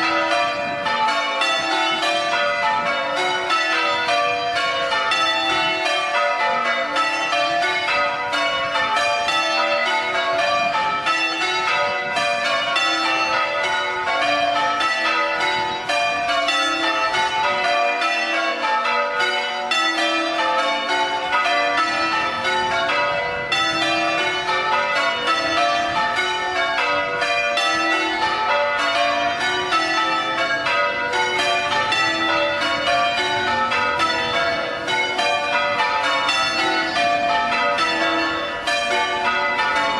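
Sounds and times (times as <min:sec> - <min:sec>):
church bells ringing: 0:00.0 - 0:39.9.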